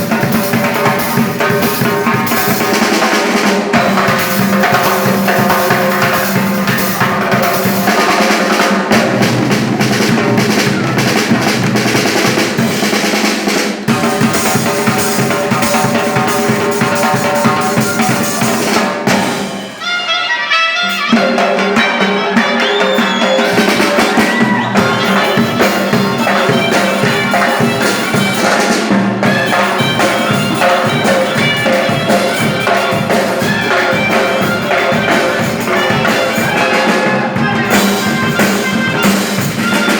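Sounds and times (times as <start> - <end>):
driving drum beat: 0.0 - 19.8, 20.9 - 39.9
band music: 0.0 - 39.9
brass-like lead: 13.9 - 39.9.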